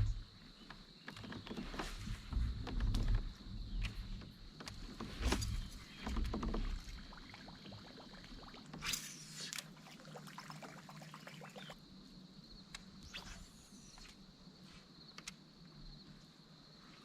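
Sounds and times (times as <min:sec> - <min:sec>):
wind rumbling on microphone: 0:00.0 - 0:00.4, 0:01.1 - 0:08.6
knocks and clicks against hull: 0:00.0 - 0:09.0
water splash: 0:06.9 - 0:11.8.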